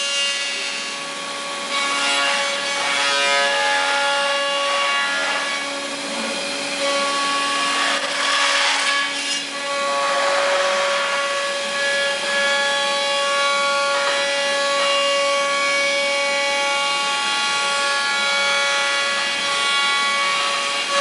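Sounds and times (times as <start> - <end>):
machine spindle whining while cutting: 0.0 - 14.4.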